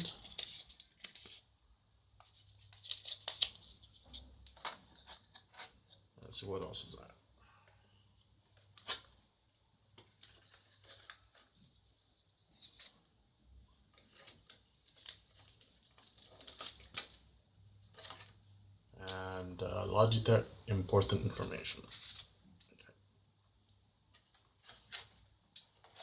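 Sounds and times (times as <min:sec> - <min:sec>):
paper and cardboard rustling: 0:00.0 - 0:01.5, 0:02.2 - 0:06.0, 0:09.9 - 0:13.0, 0:13.9 - 0:18.6, 0:21.8 - 0:22.7, 0:24.1 - 0:26.0.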